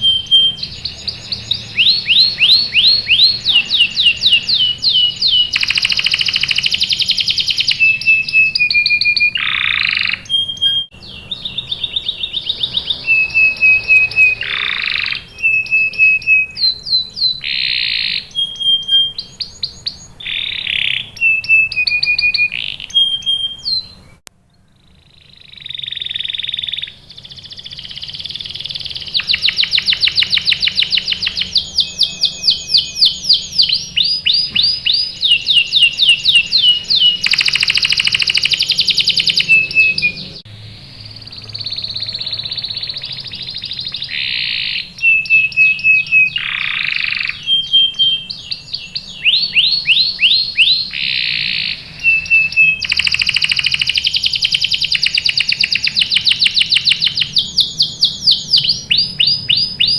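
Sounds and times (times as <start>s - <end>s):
canary singing trills: 0.0s - 59.9s.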